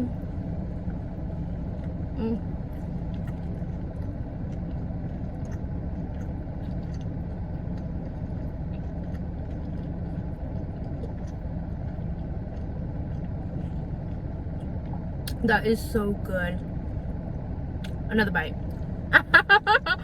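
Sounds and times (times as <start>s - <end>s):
vehicle engine idling: 0.0s - 20.0s
person chewing: 0.1s - 15.4s.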